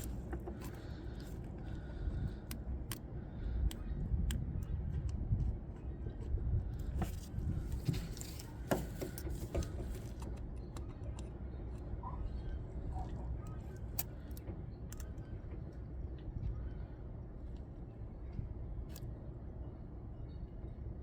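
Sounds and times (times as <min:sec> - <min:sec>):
low background rumble: 0:00.0 - 0:21.0.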